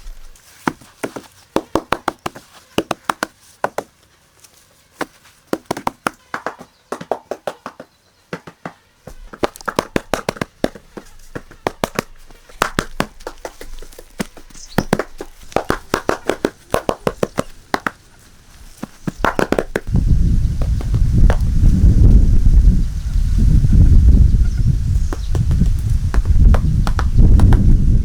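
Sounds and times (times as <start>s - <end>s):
loud low rushing noise: 19.9s - 28.0s.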